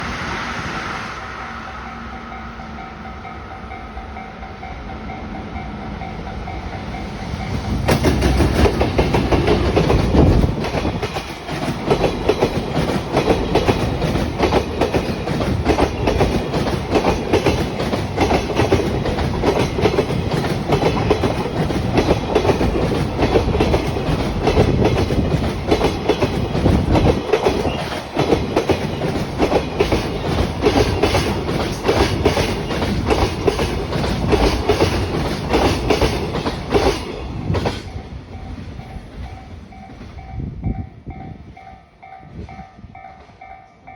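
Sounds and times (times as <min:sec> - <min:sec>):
electric locomotive passing: 0:00.0 - 0:43.9
train wheels clacking on rail joints: 0:06.0 - 0:43.7.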